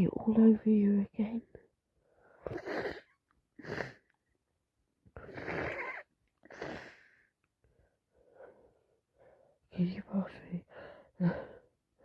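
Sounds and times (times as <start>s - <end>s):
person blowing congested nose: 2.4s - 3.0s, 3.6s - 4.0s, 5.2s - 7.1s.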